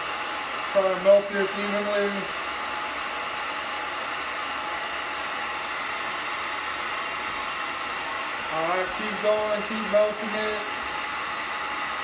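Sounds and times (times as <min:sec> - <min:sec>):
hair dryer running: 0:00.0 - 0:12.0.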